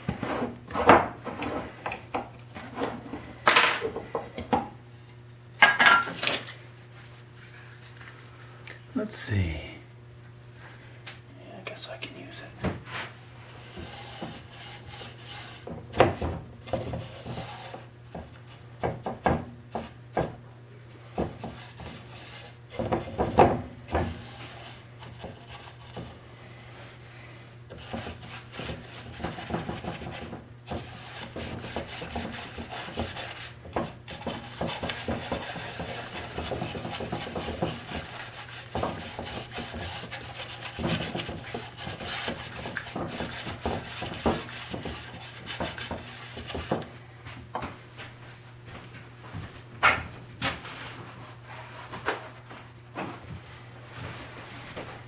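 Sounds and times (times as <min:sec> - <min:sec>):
cloth scrubbing wood: 0:12.9 - 0:18.6, 0:24.0 - 0:26.2, 0:27.7 - 0:46.8.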